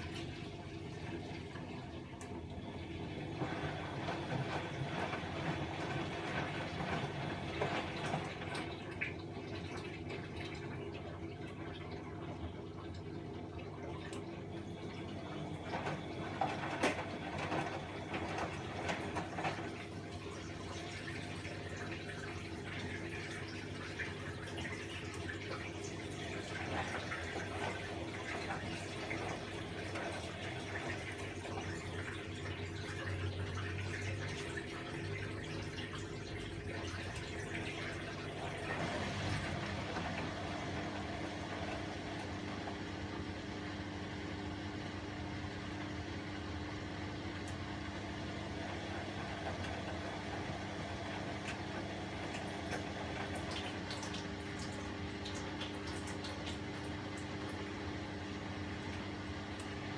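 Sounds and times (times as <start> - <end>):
washing machine filling with water: 0.0 - 59.9
washing machine motor hum: 0.0 - 59.9
ticks and splashes in drum: 3.3 - 14.4, 15.2 - 43.0, 49.0 - 57.7.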